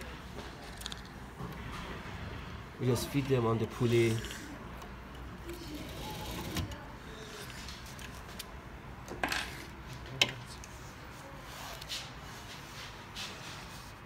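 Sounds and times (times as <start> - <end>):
handling noise of belt parts: 0.0 - 1.9.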